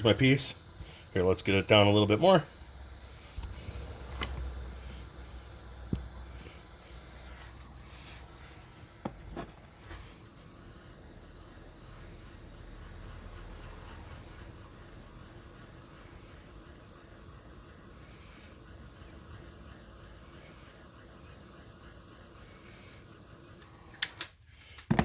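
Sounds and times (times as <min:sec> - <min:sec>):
heat tool hissing: 0:00.0 - 0:25.0.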